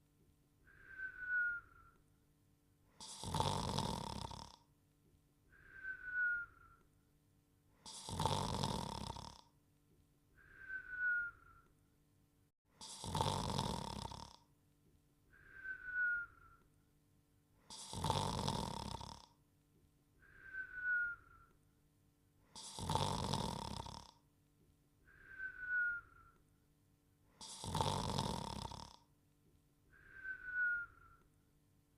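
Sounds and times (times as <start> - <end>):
cartoon dog snoring and whistling: 0.6 - 2.0, 3.0 - 4.6, 5.5 - 6.9, 7.8 - 9.5, 10.4 - 11.7, 12.8 - 14.5, 15.3 - 16.7, 17.7 - 19.4, 20.2 - 21.6, 22.5 - 24.2, 25.0 - 26.4, 27.3 - 29.1, 29.9 - 31.4.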